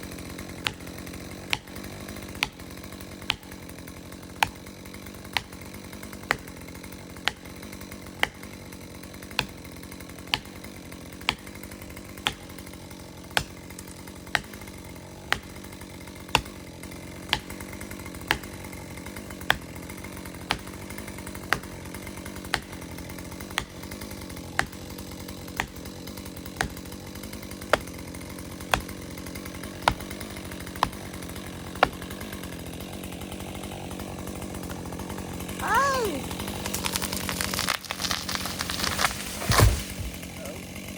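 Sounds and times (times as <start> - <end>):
chainsaw idling: 0.0 - 40.9
hammer striking wedge: 3.2 - 3.5, 11.3 - 11.5, 12.2 - 12.6, 14.3 - 14.6, 15.3 - 15.5, 20.4 - 20.8, 25.6 - 25.8, 26.6 - 26.8, 28.7 - 29.0.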